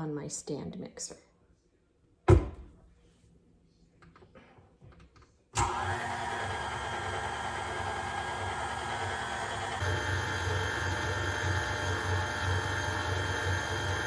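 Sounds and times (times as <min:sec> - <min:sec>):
stand mixer motor running: 0:05.6 - 0:14.0.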